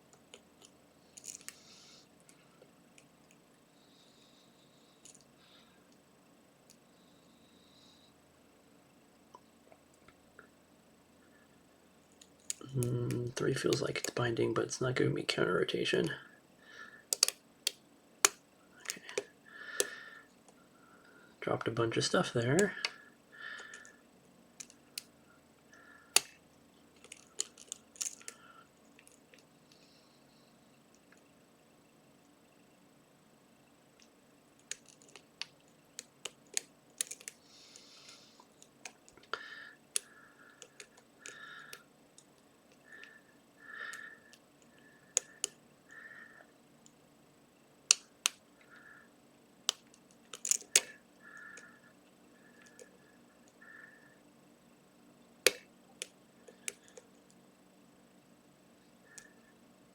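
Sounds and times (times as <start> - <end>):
lock pick metallic clicks: 49.7 - 51.0.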